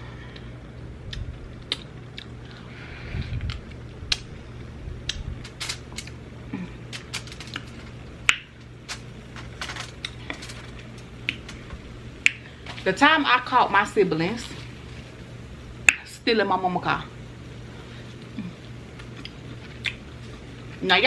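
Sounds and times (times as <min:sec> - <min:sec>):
low steady hum: 0:00.0 - 0:21.0
person chewing food: 0:01.1 - 0:02.7, 0:18.1 - 0:20.8.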